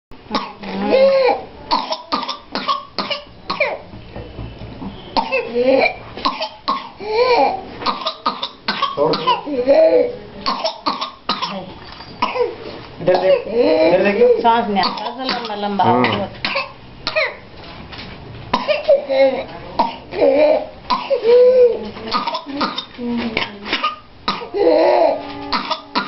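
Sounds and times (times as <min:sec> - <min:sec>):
person coughing: 0:05.2 - 0:09.6, 0:13.1 - 0:14.0.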